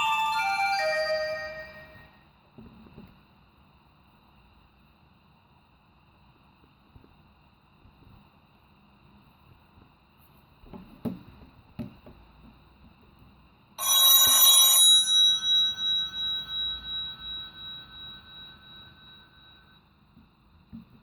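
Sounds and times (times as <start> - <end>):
bell-style phone ringtone: 0.0 - 2.2, 13.8 - 19.9.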